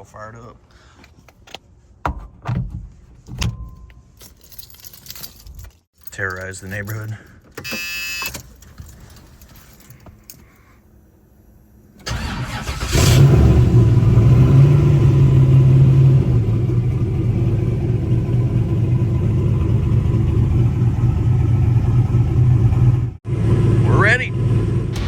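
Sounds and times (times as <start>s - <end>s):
engine starter cranking: 12.0s - 13.4s
race car engine idling loudly: 16.8s - 25.0s.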